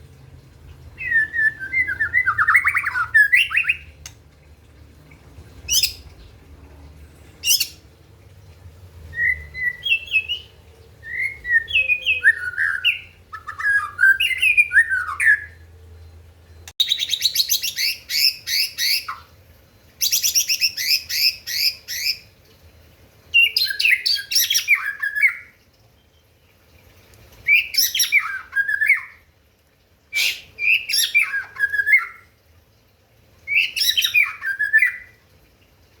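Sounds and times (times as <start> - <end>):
bird singing whistled phrases: 1.0 - 3.9, 9.1 - 15.6.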